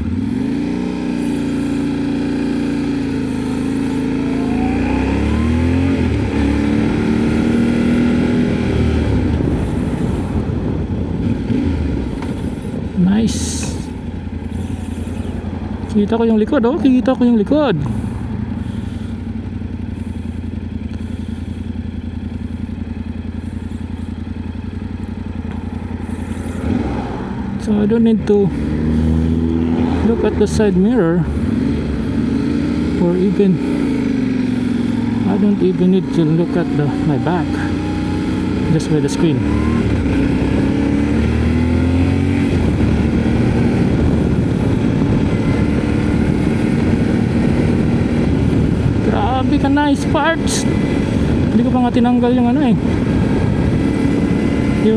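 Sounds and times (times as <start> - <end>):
motorcycle engine running steadily: 0.0 - 54.9
wind noise on microphone: 5.0 - 13.0, 39.3 - 54.9.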